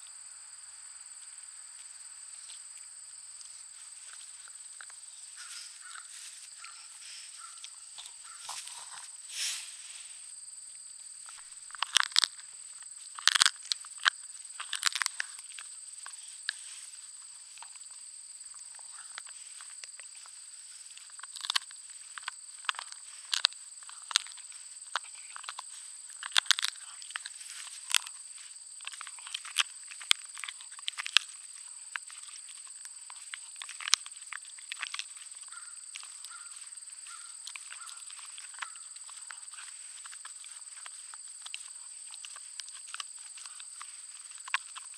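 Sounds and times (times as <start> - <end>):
dog chewing a bone: 11.3 - 12.4, 13.1 - 16.6, 20.9 - 28.2, 28.8 - 44.9.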